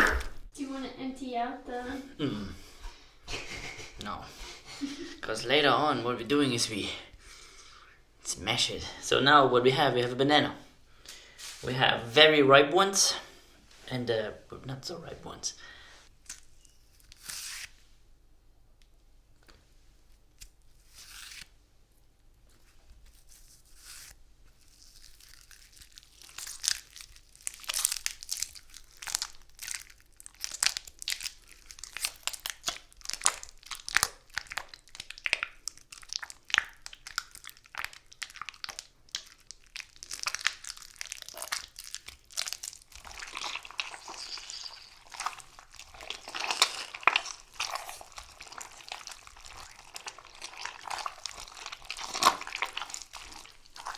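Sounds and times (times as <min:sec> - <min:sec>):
bananas squelching and tearing: 0:23.1 - 0:53.9.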